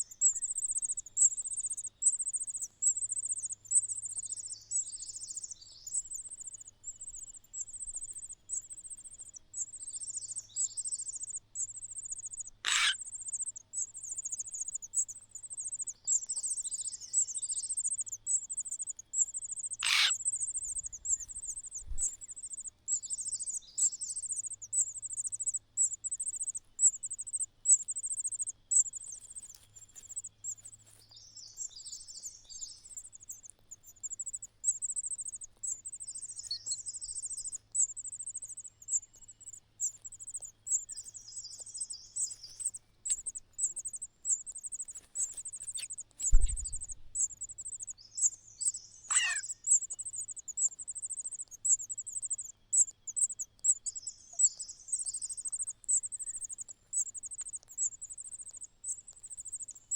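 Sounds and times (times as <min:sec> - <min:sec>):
bird chirps: 0:00.0 - 0:59.9.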